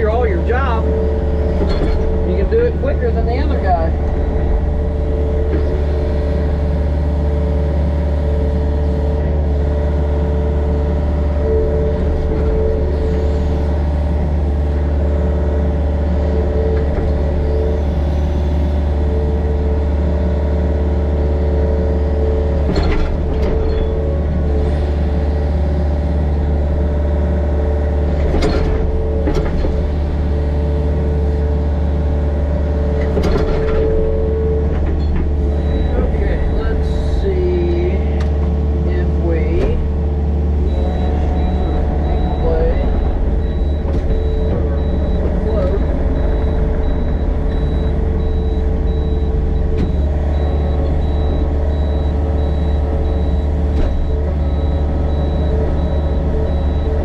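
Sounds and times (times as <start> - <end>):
excavator diesel engine running: 0.0 - 57.0
hydraulic whine: 0.0 - 57.0.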